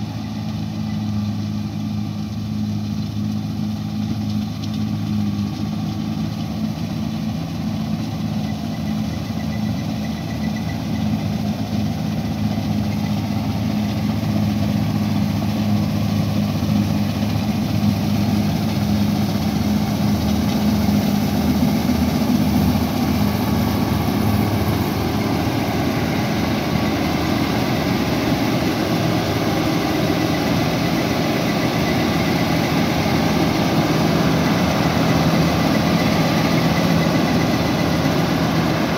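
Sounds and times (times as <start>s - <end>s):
combine harvester engine hum: 0.0s - 38.9s
cutting and threshing machinery: 9.8s - 38.9s.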